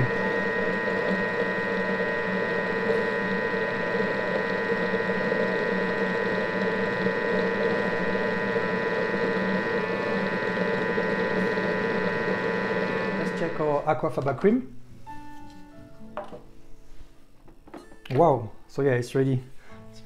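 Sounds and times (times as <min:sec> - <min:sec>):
food processor motor whine: 0:00.0 - 0:14.0.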